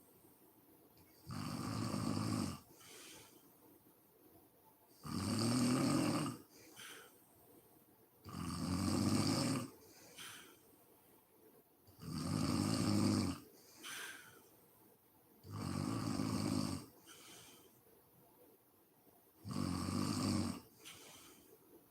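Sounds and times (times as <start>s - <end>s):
woman snoring loudly: 1.3s - 2.6s, 5.0s - 6.5s, 8.3s - 9.8s, 12.0s - 13.4s, 15.5s - 16.9s, 19.4s - 20.7s
soft breathing: 2.6s - 5.0s, 6.4s - 8.0s, 9.7s - 11.7s, 13.5s - 15.0s, 16.9s - 18.4s, 20.6s - 21.9s.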